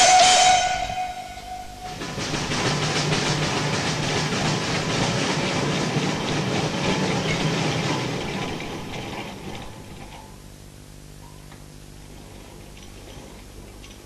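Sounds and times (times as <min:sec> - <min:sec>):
steam engine working: 0:00.0 - 0:10.4.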